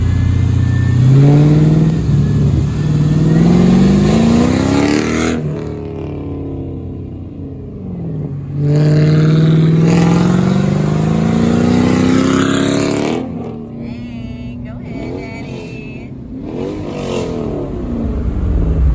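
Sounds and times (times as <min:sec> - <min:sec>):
car engine revving: 0:00.0 - 0:18.9.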